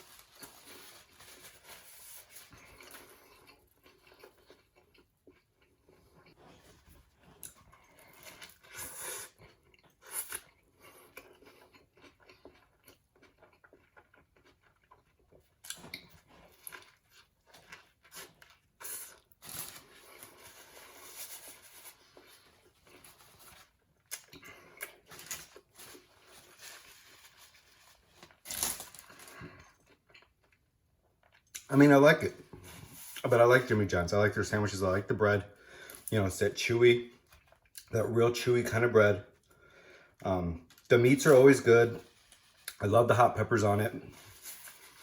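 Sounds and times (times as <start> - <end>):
person chewing: 2.5 - 21.2, 21.9 - 26.4, 28.2 - 31.7.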